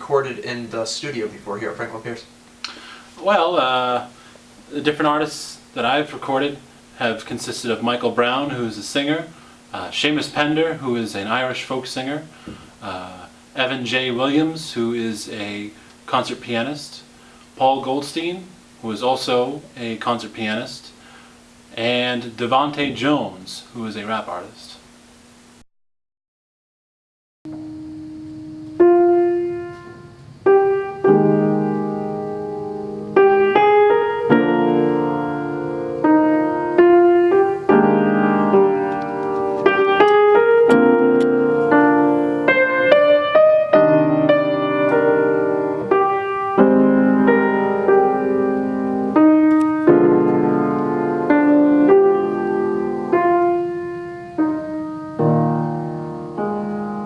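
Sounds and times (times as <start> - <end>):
solo piano playing chords: 27.5 - 57.0.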